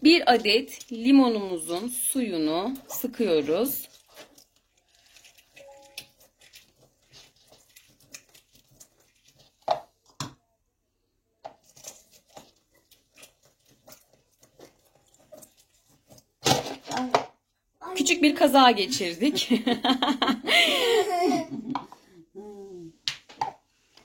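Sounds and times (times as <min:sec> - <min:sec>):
lemon squelching: 0:00.1 - 0:10.0, 0:11.5 - 0:16.5.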